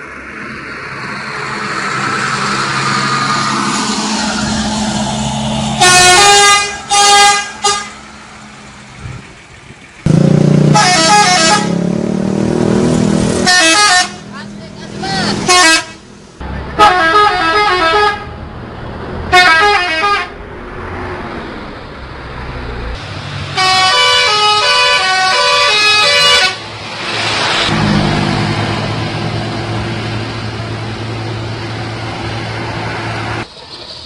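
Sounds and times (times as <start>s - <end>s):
bus musical horn melodies: 5.8s - 8.0s, 10.1s - 12.0s, 13.3s - 14.3s, 15.4s - 16.0s, 16.8s - 18.4s, 19.3s - 20.4s, 23.5s - 26.6s
vehicle engine running: 7.4s - 15.3s.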